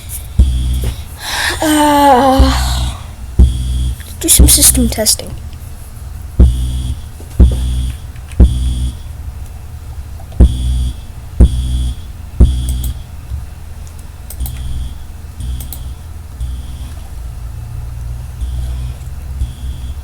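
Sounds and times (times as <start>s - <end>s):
low hum: 0.0s - 5.2s, 6.3s - 9.2s, 10.3s - 13.6s, 14.3s - 20.0s
buzzy fire alarm tones: 0.3s - 5.2s, 6.4s - 9.2s, 10.4s - 13.4s, 14.3s - 20.0s
sharp click: 12.6s - 13.0s, 14.3s - 14.8s, 15.5s - 16.0s.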